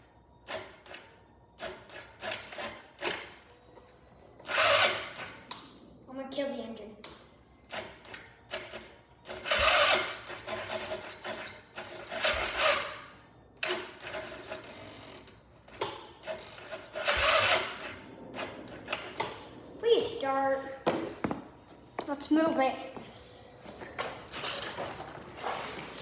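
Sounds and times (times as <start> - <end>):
engine cranking on electric starter: 4.4 - 5.6, 7.7 - 19.6.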